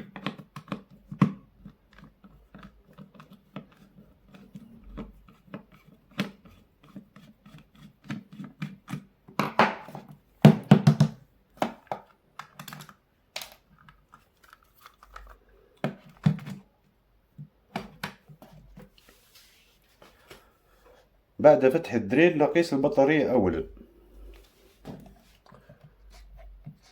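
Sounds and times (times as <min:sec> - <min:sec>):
plastic parts clicking and rattling: 0:11.6 - 0:16.7.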